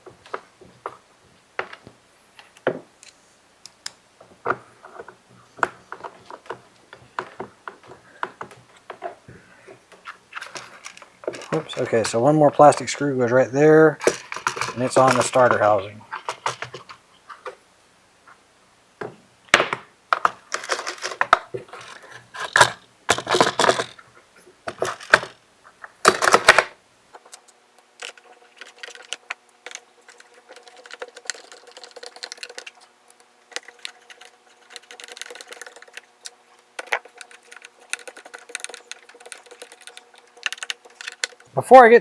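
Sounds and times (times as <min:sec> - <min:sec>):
plastic housing clicks and rattles: 0:10.4 - 0:12.2, 0:14.0 - 0:17.0, 0:20.2 - 0:24.0, 0:24.7 - 0:25.4, 0:26.0 - 0:41.6.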